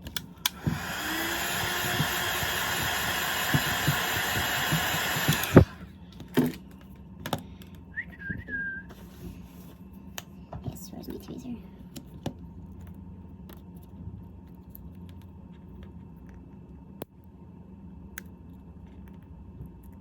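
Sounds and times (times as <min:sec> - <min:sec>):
hot-air blower running: 0:00.0 - 0:06.5.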